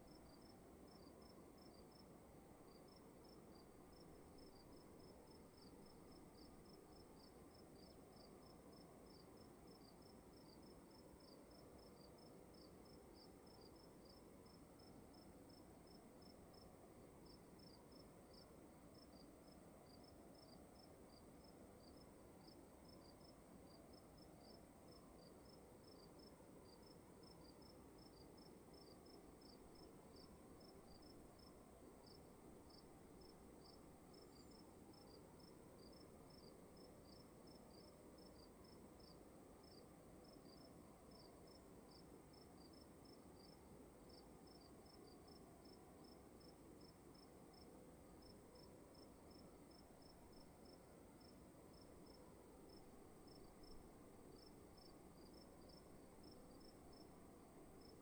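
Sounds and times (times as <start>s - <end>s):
crickets chirping faintly: 0.0s - 58.0s
low room hiss: 0.0s - 58.0s.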